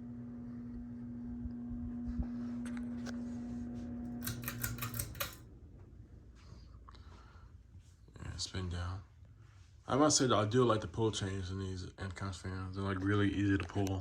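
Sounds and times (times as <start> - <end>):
ceiling fan motor humming: 0.0 - 13.4
pull chain clicks: 4.2 - 5.4.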